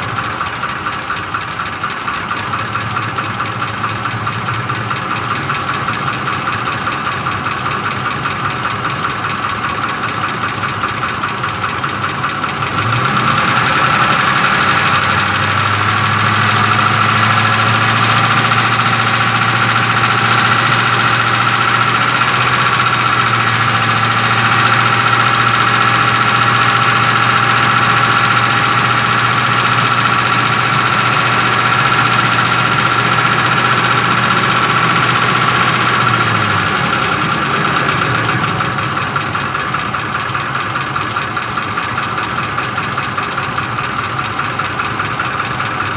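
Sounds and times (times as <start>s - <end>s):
engine running with a knock: 0.0s - 45.9s.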